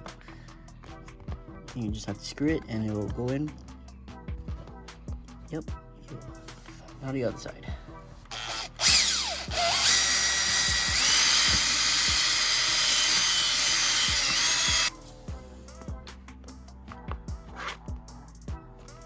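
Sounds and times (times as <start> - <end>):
faint background music with beat: 0.0 - 19.0
electric drill whining: 8.3 - 14.9.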